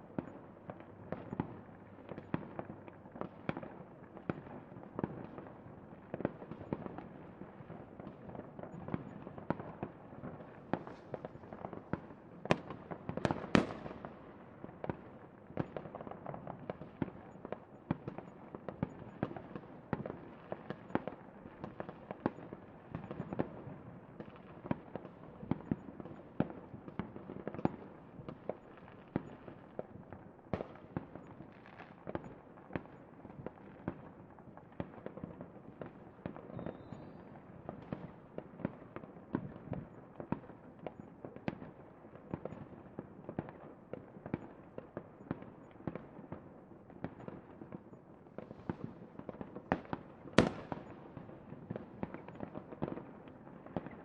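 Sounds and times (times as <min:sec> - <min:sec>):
fireworks cracking and popping: 0:14.8 - 0:54.0.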